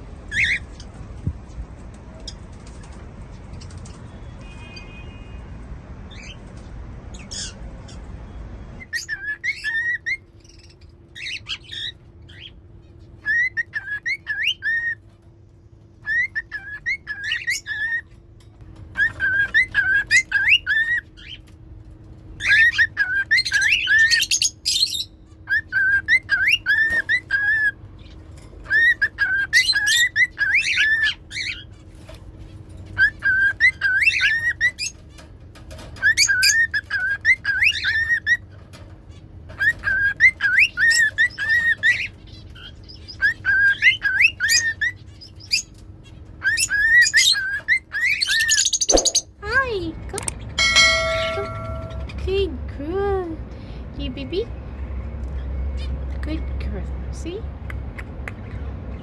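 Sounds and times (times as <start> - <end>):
cockatiels whistling: 8.8 - 10.2, 13.2 - 15.0, 16.0 - 18.0, 19.0 - 21.4, 22.4 - 27.8, 28.7 - 31.7, 33.0 - 35.0, 36.0 - 38.4, 39.6 - 45.7, 46.4 - 49.3
scratchy bird chattering: 22.4 - 49.4.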